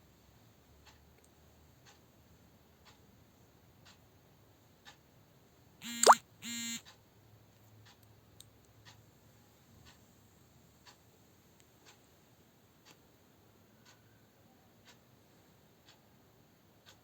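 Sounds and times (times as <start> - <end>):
short buzzy tones: 5.8 - 6.8.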